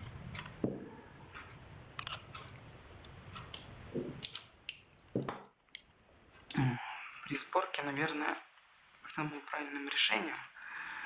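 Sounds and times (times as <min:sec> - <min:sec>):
dull knock: 0:00.6 - 0:00.9.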